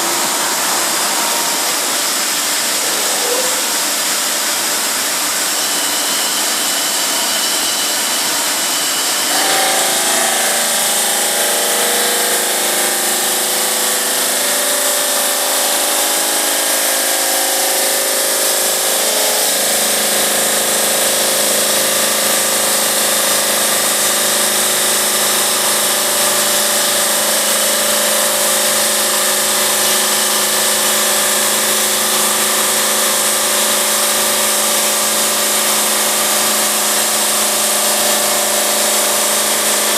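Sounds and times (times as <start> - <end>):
pitched whine: 0.0 - 4.7
saw cutting stone: 0.0 - 39.9.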